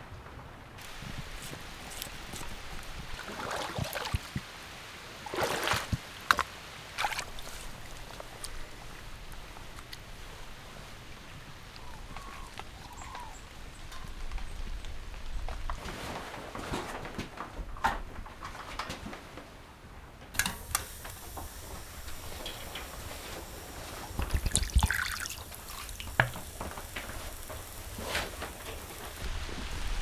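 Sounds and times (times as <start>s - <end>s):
water trickling and dripping: 0.8s - 13.4s, 20.4s - 30.0s.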